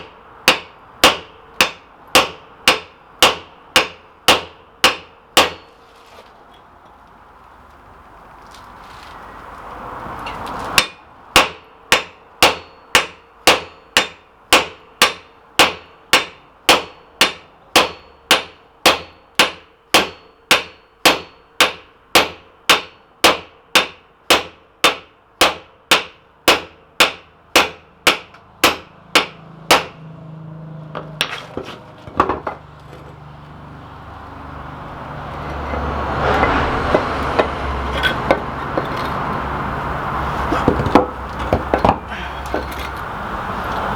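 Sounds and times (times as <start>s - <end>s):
hammer striking metal: 0.0s - 5.8s, 10.3s - 30.1s, 30.9s - 33.2s, 35.4s - 39.3s.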